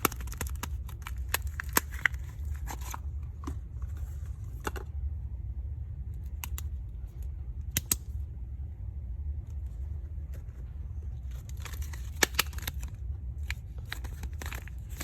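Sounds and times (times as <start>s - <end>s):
plastic wrapping crinkling and tearing: 0.0s - 3.0s, 11.2s - 15.0s
steady low hum: 0.0s - 15.0s.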